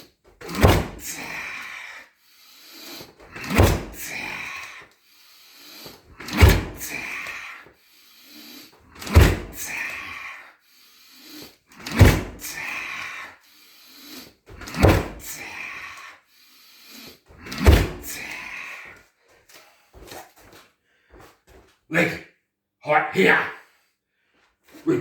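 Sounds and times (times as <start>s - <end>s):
kicks thudding on heavy bag: 0.5s - 1.2s, 3.4s - 4.2s, 6.3s - 7.0s, 9.1s - 9.6s, 14.7s - 15.3s, 17.6s - 18.2s.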